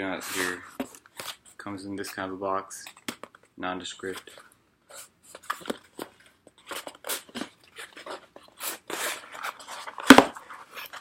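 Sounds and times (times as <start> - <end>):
cardboard box crinkling and scraping: 6.6 - 11.0.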